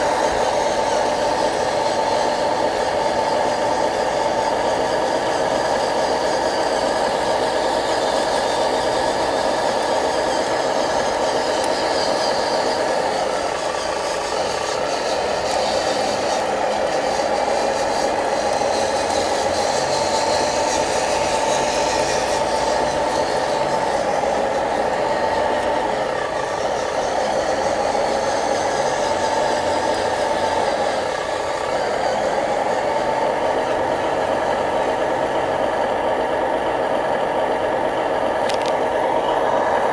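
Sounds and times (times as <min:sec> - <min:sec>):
small motor and gears whirring: 0:00.0 - 0:39.9
rattle: 0:07.6 - 0:24.7.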